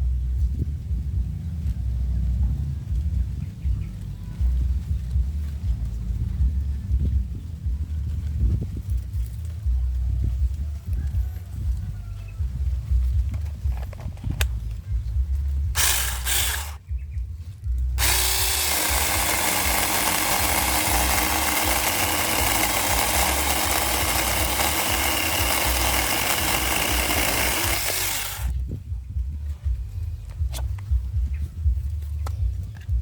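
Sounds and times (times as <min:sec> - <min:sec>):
low rumble: 0:00.0 - 0:19.1, 0:28.2 - 0:33.0
chainsaw cutting wood: 0:15.7 - 0:16.8, 0:18.0 - 0:28.5.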